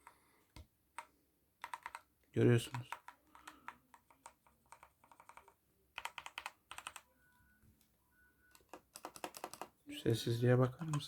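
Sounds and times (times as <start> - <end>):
soft keyboard clacks: 0.0 - 7.1.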